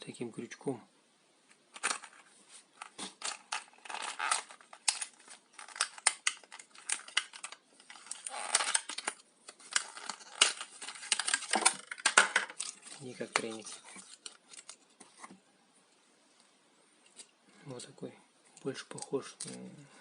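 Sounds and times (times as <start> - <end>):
plastic packaging crinkling: 1.7 - 15.2.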